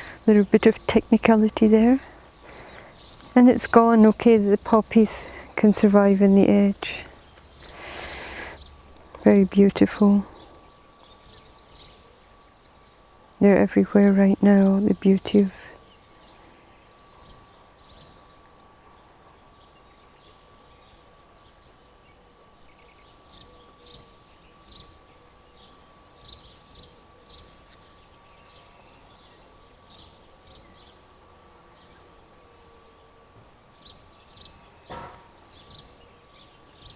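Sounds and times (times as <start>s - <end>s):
faint background hush: 0.0s - 24.3s
sharp knock: 34.9s - 35.4s.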